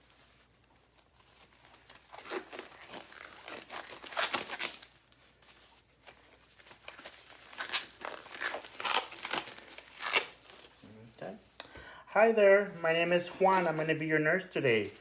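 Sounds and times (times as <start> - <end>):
gloves rustling and crinkling: 0.0 - 11.6, 12.4 - 15.0.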